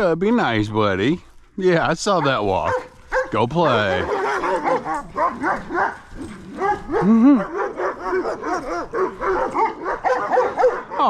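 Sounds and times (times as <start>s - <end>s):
dogs barking and yipping: 2.0s - 11.0s
dog yelp rising and falling: 2.2s - 11.0s.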